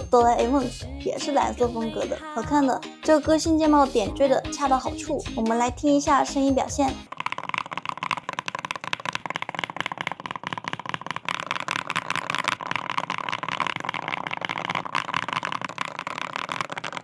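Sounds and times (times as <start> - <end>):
muffled keyboard typing: 5.6 - 17.0.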